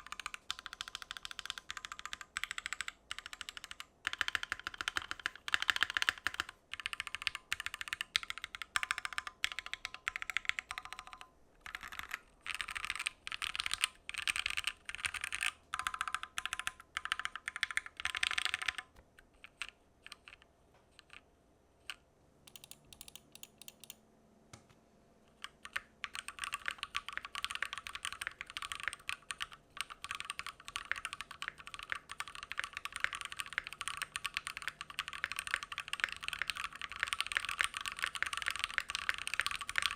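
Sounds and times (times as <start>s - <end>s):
mechanical keyboard typing: 0.0s - 21.2s, 21.9s - 24.0s, 25.4s - 39.9s.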